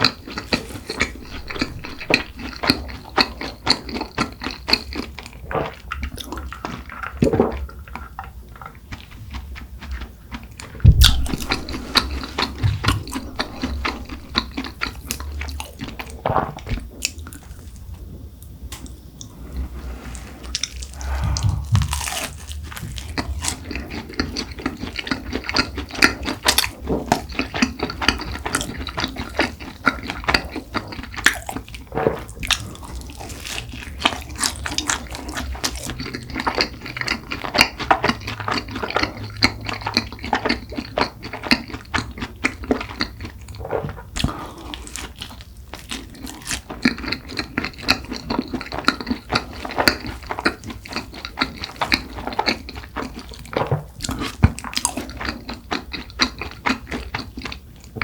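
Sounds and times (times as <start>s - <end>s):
chewing and biting pastry: 0.0s - 18.0s, 20.4s - 58.0s.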